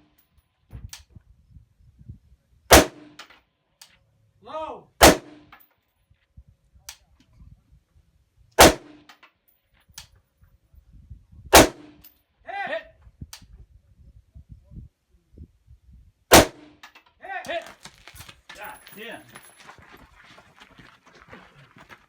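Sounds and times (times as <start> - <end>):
rifle shots: 2.7 - 3.2, 5.0 - 5.5, 8.6 - 9.0, 11.5 - 12.0, 16.3 - 16.8.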